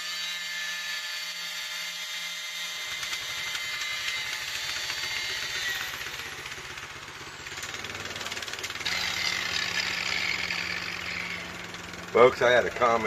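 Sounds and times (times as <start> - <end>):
machine motor running: 2.9 - 13.0.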